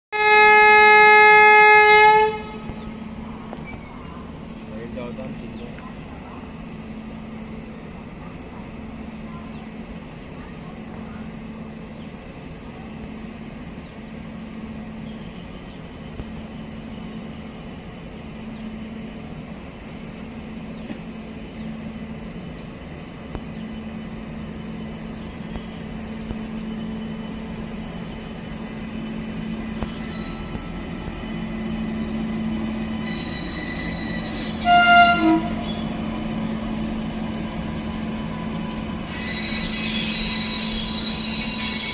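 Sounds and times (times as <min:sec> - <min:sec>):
deep locomotive horn blasts: 0:00.1 - 0:03.0, 0:32.8 - 0:36.6
electric locomotive hum: 0:00.2 - 0:41.9.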